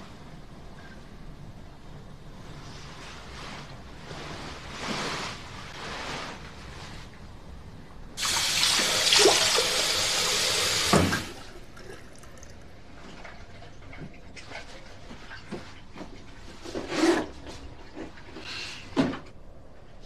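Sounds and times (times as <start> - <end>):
water running from a tap: 8.2 - 12.5.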